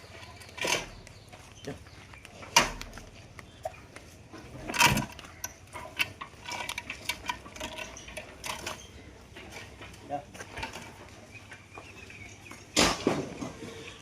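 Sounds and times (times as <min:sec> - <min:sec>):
clicking and knocking: 0:04.6 - 0:11.1.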